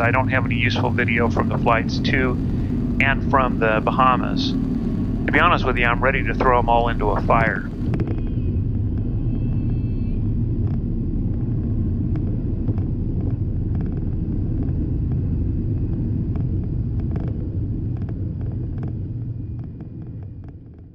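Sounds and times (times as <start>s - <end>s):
aircraft engine and propeller drone: 0.0s - 9.6s.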